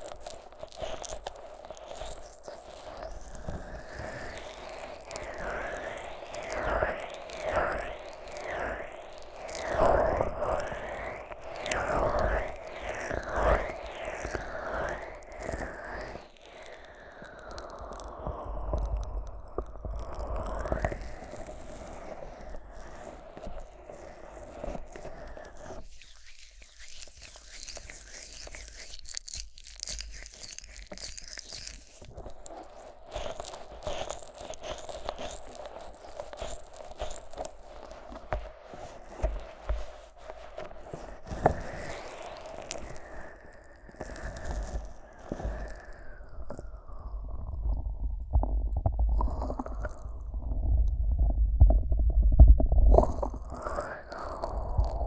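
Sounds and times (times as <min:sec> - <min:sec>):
fingers rubbing vaseline on microphone: 0:00.0 - 0:29.3, 0:30.0 - 0:55.0
sticky squishing and crackling: 0:00.0 - 0:55.0
sticky crackling on microphone: 0:30.0 - 0:55.0
low rumble: 0:50.1 - 0:53.4.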